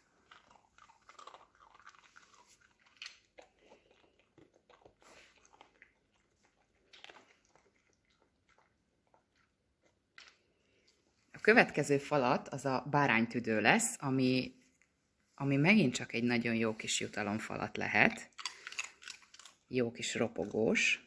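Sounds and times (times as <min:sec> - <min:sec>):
dog crunching a treat: 0:00.0 - 0:10.9, 0:18.0 - 0:21.0.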